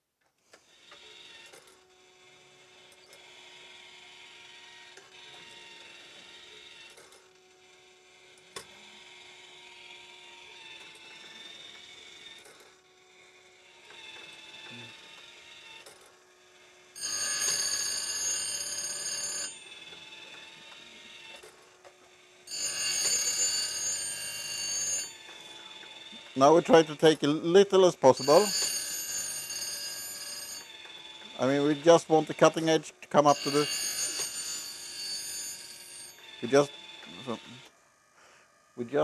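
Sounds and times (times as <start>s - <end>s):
grinding wheel on chain: 17.0s - 21.5s, 22.5s - 37.6s
grinder motor hum: 17.0s - 37.7s.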